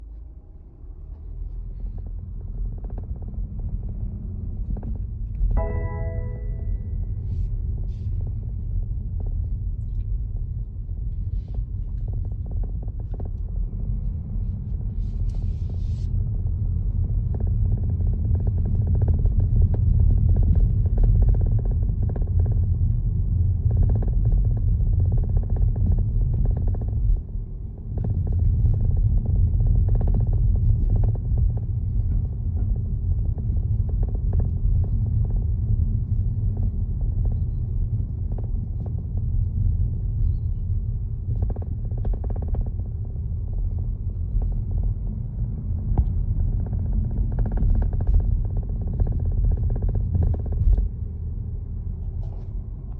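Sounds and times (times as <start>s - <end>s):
diesel engine rumbling: 0.0s - 52.9s.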